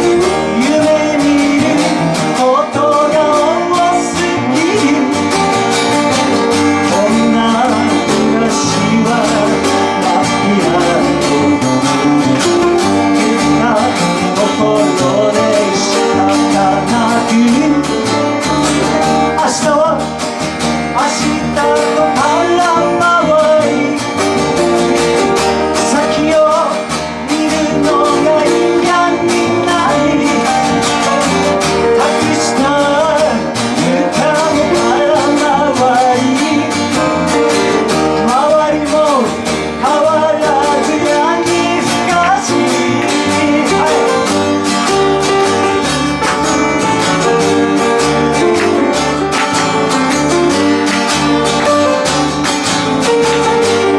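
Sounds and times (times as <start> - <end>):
acoustic guitar: 0.0 - 53.9
person singing: 0.0 - 53.9
steady beat: 41.1 - 53.9.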